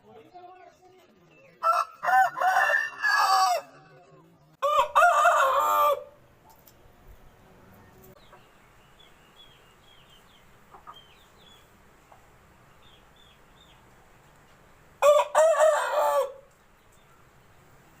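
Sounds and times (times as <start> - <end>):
small birds chirping: 0.0 - 1.9, 6.3 - 15.2, 16.3 - 18.0
rooster crowing: 1.6 - 4.0, 4.6 - 6.2, 15.0 - 16.5.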